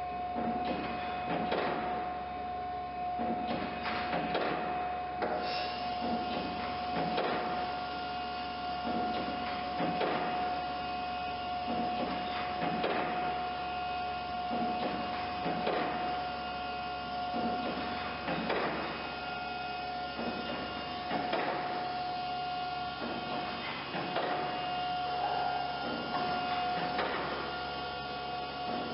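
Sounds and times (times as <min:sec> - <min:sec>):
grinding machine motor: 0:05.8 - 0:28.9.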